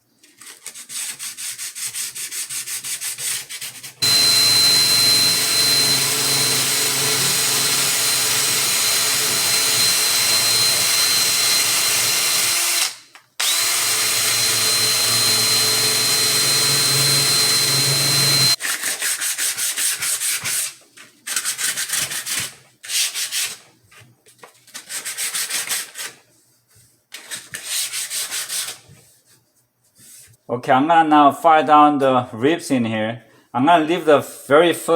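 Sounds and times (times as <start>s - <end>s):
rotary grinding tool whine: 4.0s - 18.6s.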